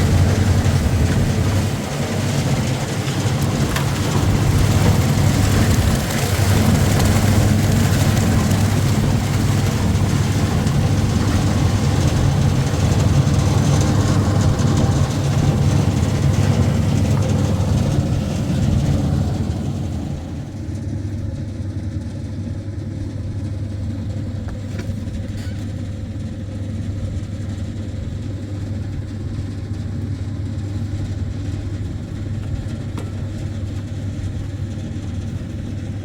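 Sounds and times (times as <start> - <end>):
heavy engine droning: 0.0 - 27.2.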